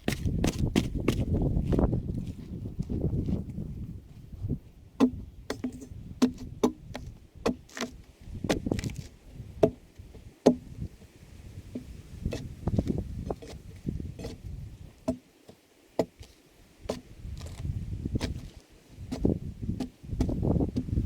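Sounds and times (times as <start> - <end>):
tool knocking on a log: 5.0 - 7.6, 9.6 - 9.8, 10.4 - 10.7, 15.0 - 15.2, 19.1 - 21.0.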